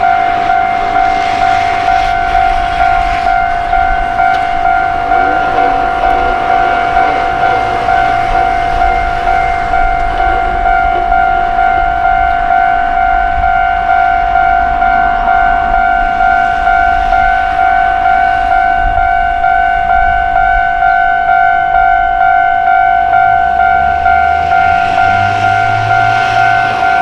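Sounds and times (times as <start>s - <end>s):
low rumble: 0.0s - 20.3s
level crossing warning bell: 0.0s - 27.0s.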